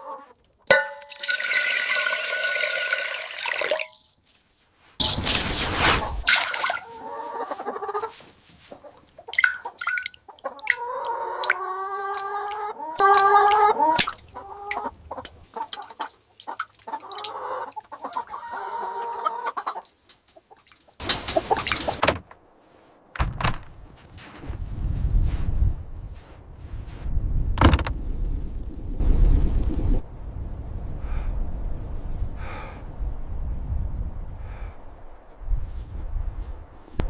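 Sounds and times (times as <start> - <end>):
hens clucking and squawking: 0.0 - 0.5, 6.2 - 22.0
low rumble: 23.3 - 37.0.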